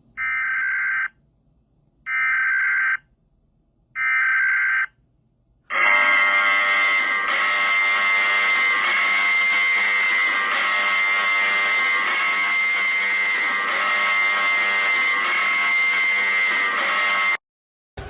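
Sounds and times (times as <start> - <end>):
harsh buzzing alarm tone: 2.1 - 3.0, 5.7 - 17.4.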